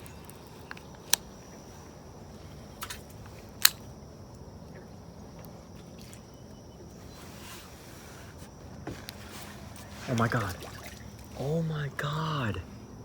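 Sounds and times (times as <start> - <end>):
outdoor background hiss: 0.0 - 13.0
sharp clicks: 3.6 - 3.9.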